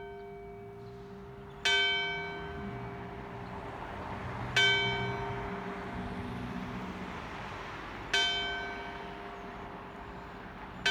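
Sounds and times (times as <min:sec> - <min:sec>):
church bell tolling: 0:00.0 - 0:03.3, 0:04.6 - 0:05.7.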